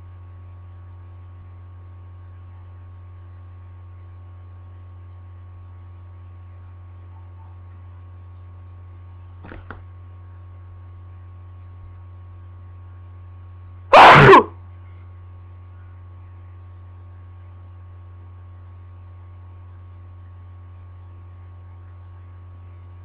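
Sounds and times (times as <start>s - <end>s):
low electrical hum: 0.0s - 23.0s
person sneezing: 13.9s - 14.6s.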